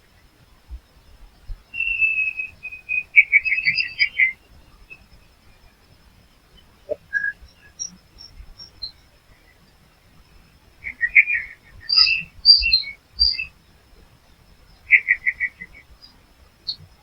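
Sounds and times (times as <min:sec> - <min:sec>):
small songbirds chirping: 0:00.0 - 0:17.0.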